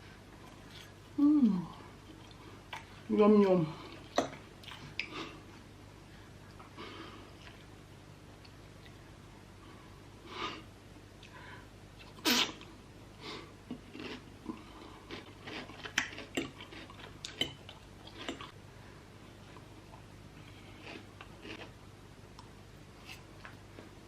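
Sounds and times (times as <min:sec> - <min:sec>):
sneeze-like burst: 0:12.2 - 0:12.6
mouth clicks and chewing: 0:15.1 - 0:18.5.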